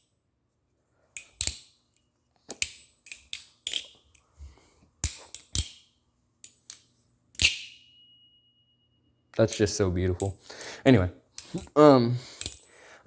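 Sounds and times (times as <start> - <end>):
balisong handles clacking: 1.2 - 4.3, 5.0 - 7.8, 11.3 - 12.7
thin high metallic ring: 7.4 - 9.8.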